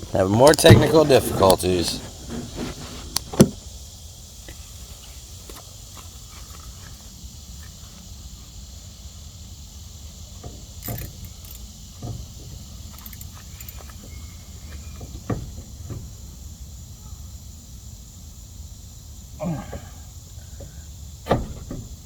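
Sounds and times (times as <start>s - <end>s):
hand tools clicking on metal: 12.9s - 14.0s.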